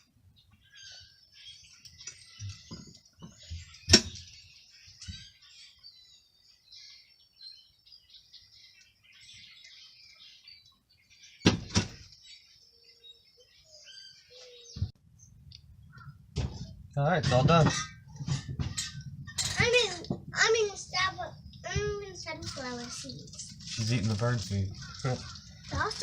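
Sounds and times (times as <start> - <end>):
small birds chirping: 0.0 - 26.0
sharp knocks: 11.4 - 12.0.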